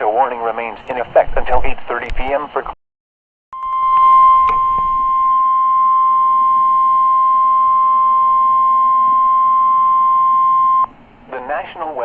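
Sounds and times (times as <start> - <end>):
high-pitched alarm beep: 3.6 - 10.9.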